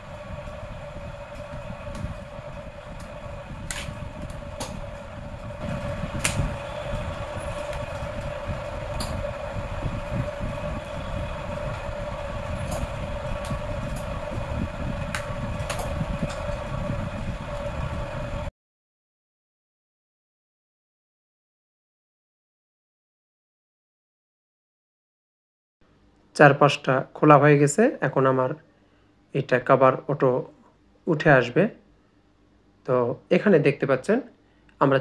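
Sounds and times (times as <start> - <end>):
steady rumble with hum: 0.0 - 18.5.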